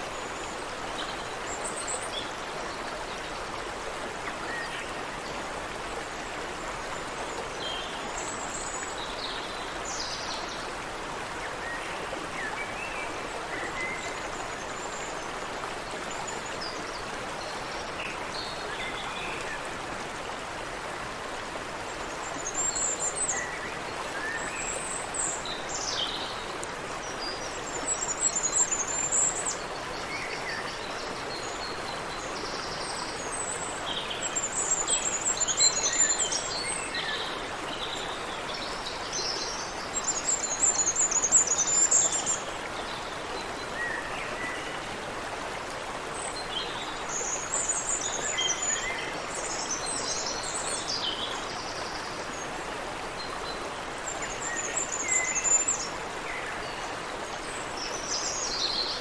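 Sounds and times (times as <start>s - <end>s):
creek water rushing: 0.0s - 59.0s.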